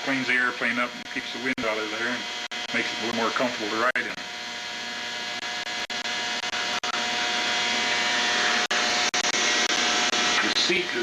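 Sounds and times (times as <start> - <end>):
steady whirring hiss: 0.0 - 11.0.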